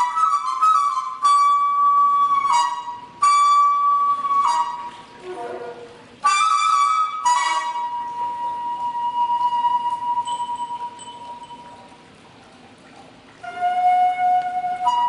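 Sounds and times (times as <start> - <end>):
bamboo flute playing long notes: 0.0 - 11.6, 13.4 - 15.0.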